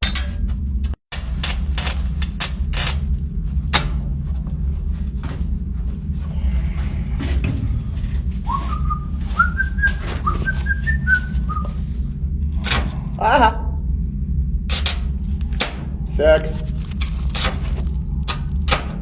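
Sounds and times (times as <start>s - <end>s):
low machinery hum: 0.0s - 19.0s
person whistling a tune: 8.5s - 11.8s
sharp clicks and knocks: 16.9s - 19.0s.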